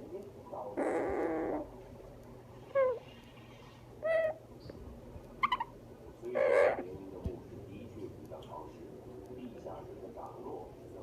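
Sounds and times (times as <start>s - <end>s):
parrot calls: 0.8s - 1.7s, 2.6s - 3.2s, 4.0s - 4.5s, 5.4s - 6.9s.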